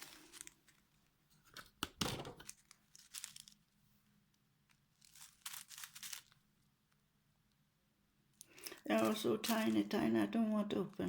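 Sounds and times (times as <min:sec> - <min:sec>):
plastic packets crinkling: 0:00.0 - 0:01.1, 0:02.0 - 0:03.8, 0:04.6 - 0:06.5, 0:08.4 - 0:10.2.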